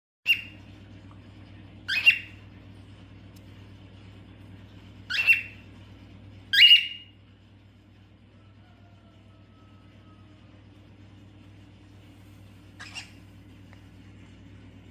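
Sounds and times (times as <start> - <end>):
steady low hum: 0.3 - 14.9
cockatiel shrill calls: 1.9 - 2.3, 5.1 - 5.6, 6.5 - 7.1, 12.8 - 13.2.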